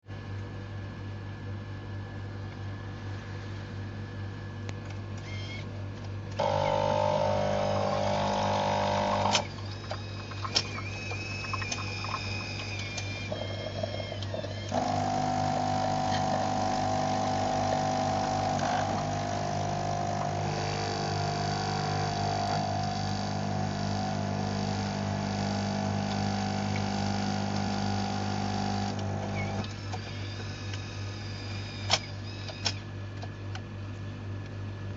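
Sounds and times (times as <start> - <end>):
espresso machine buzzing: 6.4 - 32.6.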